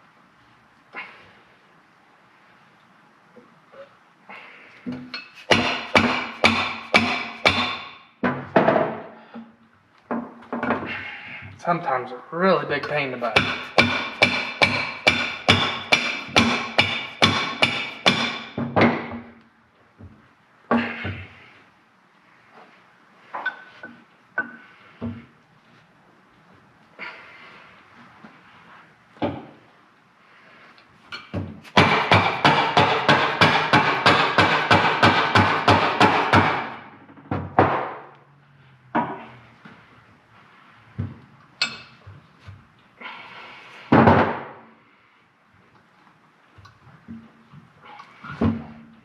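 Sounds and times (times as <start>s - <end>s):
hammer striking metal: 5.2s - 8.0s, 13.3s - 19.0s, 31.7s - 36.9s.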